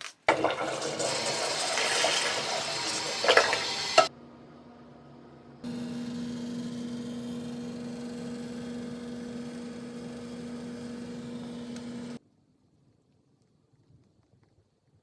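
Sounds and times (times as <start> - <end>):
electrical appliance hum: 0.2 - 12.2.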